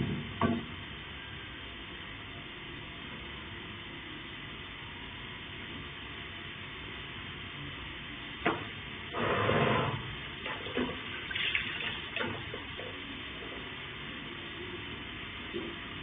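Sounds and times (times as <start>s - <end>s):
water pouring: 10.4s - 12.9s.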